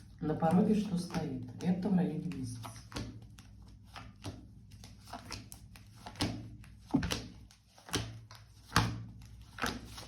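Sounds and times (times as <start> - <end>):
cards knocking on a table: 6.2 - 7.4.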